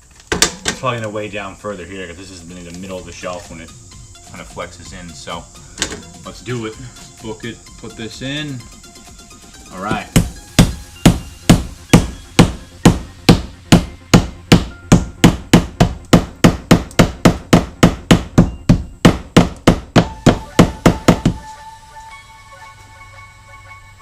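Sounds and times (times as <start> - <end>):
hammer striking nail: 10.0 - 21.4.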